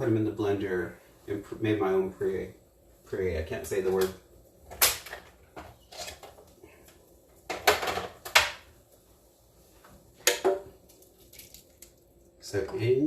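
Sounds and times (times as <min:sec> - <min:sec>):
kitchenware scraping: 0:04.9 - 0:06.4.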